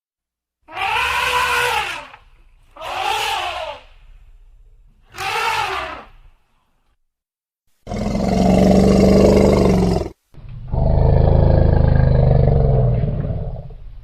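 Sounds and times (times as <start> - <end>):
elephant roaring: 0.7 - 2.2, 2.8 - 4.0, 5.1 - 6.2, 7.9 - 13.8.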